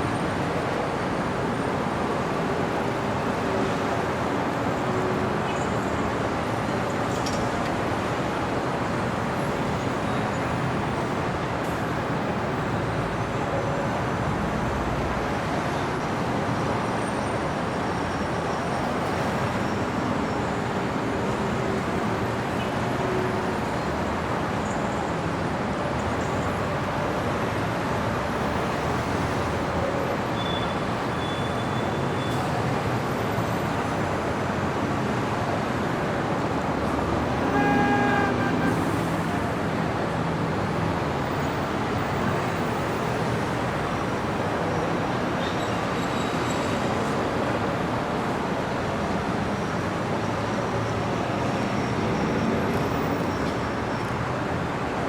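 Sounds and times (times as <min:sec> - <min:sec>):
city street traffic: 0:00.0 - 0:55.0
car horn toot: 0:37.2 - 0:39.1.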